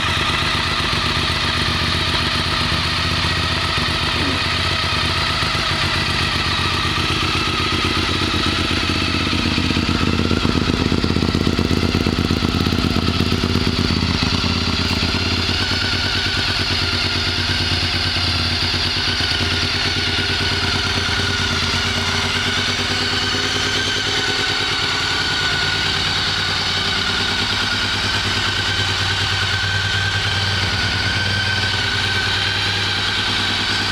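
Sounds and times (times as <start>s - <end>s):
motorcycle engine idling: 0.0s - 33.9s.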